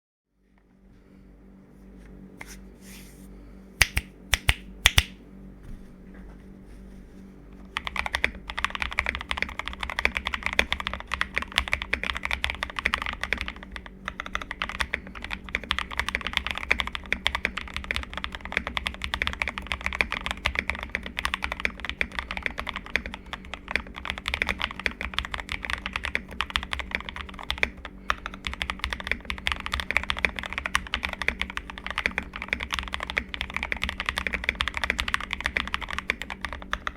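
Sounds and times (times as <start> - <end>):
mechanical keyboard typing: 7.7 - 36.9.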